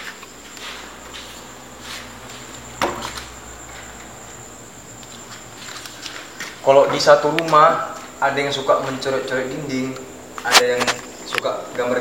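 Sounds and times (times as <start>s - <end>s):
faint scuffs: 0.0s - 4.1s, 5.1s - 6.7s, 10.4s - 11.1s
insects chirring: 0.0s - 12.0s.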